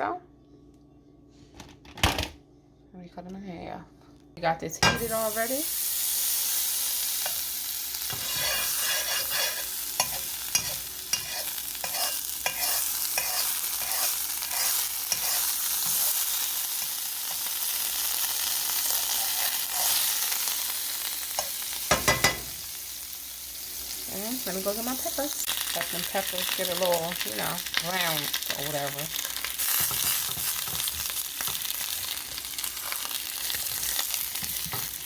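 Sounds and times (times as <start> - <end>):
sizzling in frying pan: 4.9 - 35.0
utensil scraping pan: 8.1 - 16.1.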